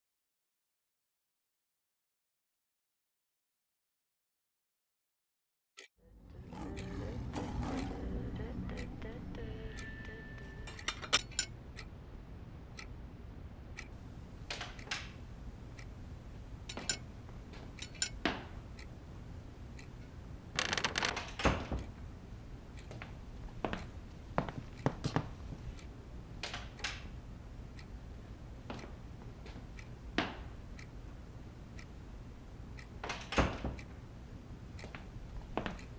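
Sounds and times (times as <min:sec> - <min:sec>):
low steady hum: 0:06.0 - 0:35.9
objects clattering: 0:10.6 - 0:11.5.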